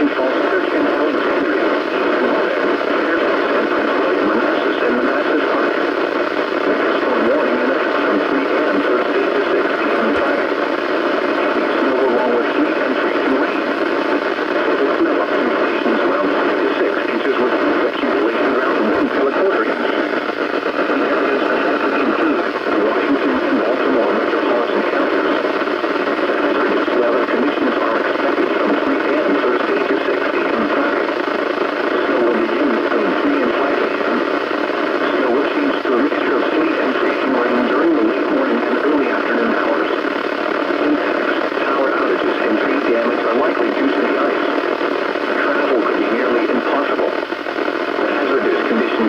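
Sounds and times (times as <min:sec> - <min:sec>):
radio static hiss: 0:00.0 - 0:49.0
faint automated voice: 0:06.6 - 0:25.4, 0:31.9 - 0:34.3, 0:35.0 - 0:40.0, 0:40.7 - 0:44.5, 0:45.3 - 0:47.2, 0:48.0 - 0:49.0.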